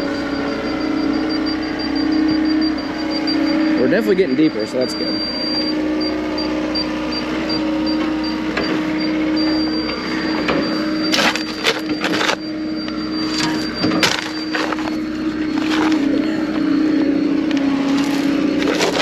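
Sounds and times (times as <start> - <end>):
faint high beep: 0.0 - 19.0
skid loader engine running: 0.0 - 19.0
bucket clanks and scrapes: 11.1 - 12.4, 13.3 - 16.1, 18.0 - 19.0.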